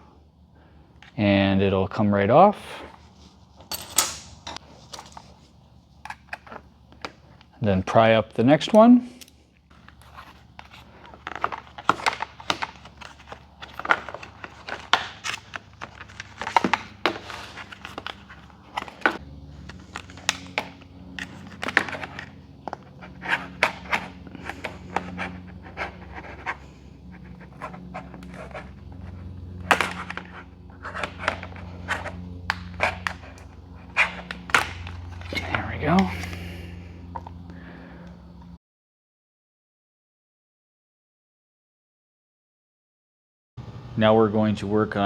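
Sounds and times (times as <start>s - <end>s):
steady low hum: 0.0s - 38.6s
plastic clips clicking and scraping: 3.7s - 7.6s, 8.6s - 36.4s.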